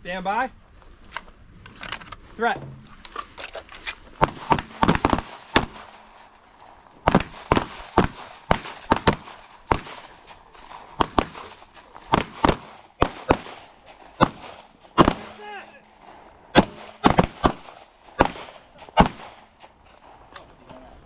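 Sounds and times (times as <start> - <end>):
gunshots: 4.2 - 6.4, 7.0 - 15.8, 16.5 - 19.6.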